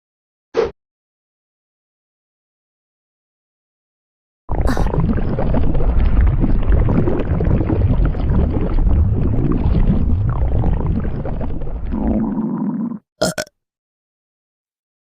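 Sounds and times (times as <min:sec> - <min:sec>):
stomach growling: 0:04.5 - 0:13.5.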